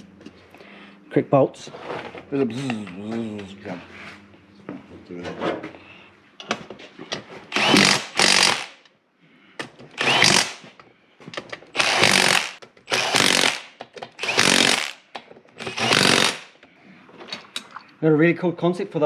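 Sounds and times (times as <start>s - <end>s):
power tool driving bolts: 7.5s - 8.8s, 9.9s - 10.7s, 11.7s - 16.6s.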